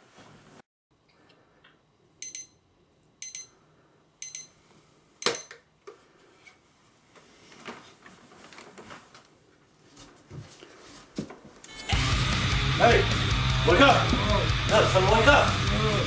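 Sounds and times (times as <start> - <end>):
alarm clock beeping: 2.2 - 2.6, 3.2 - 3.6, 4.2 - 4.6, 5.2 - 5.6.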